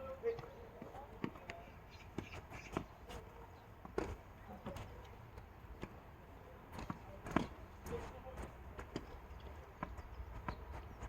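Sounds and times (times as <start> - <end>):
tennis balls struck and bouncing: 6.7 - 8.0.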